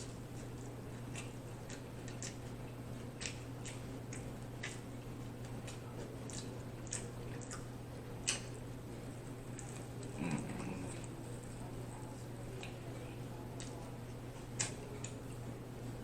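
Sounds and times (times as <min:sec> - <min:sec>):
wet mouth chewing clicks: 0:00.0 - 0:12.9, 0:13.6 - 0:15.4
steady low hum: 0:00.0 - 0:16.0.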